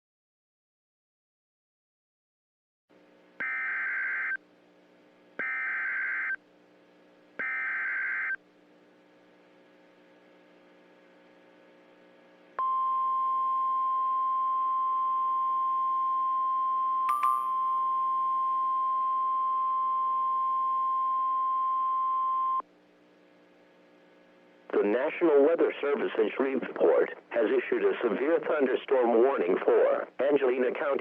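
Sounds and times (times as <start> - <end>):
faint hum: 2.9 - 31.0
steady single-pitch alert tone: 7.4 - 8.4.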